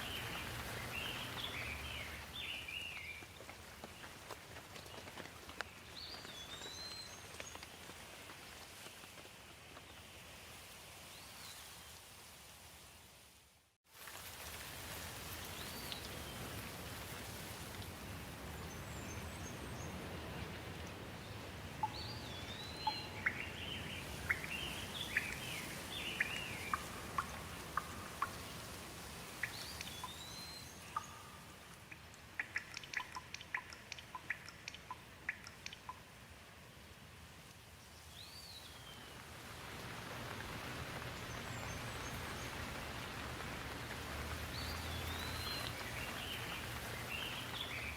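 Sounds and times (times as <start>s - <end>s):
birds calling: 0.0s - 3.2s, 21.8s - 28.6s, 44.3s - 47.9s
water dripping: 0.0s - 4.3s, 14.2s - 18.7s, 21.8s - 36.4s, 38.9s - 47.9s
steady rain: 0.0s - 47.9s.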